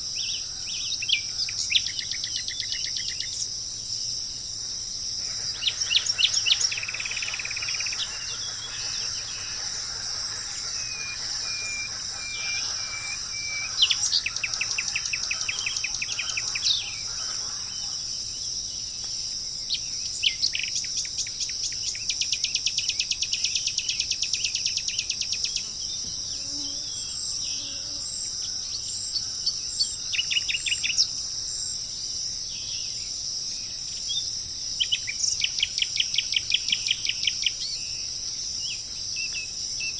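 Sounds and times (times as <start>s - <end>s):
high-pitched insect chorus: 0.0s - 39.9s
songbirds trilling: 0.0s - 39.9s.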